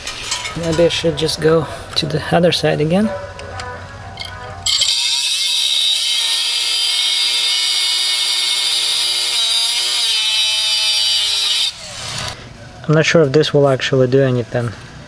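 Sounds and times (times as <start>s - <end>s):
power tool grinding steel: 4.6s - 12.4s.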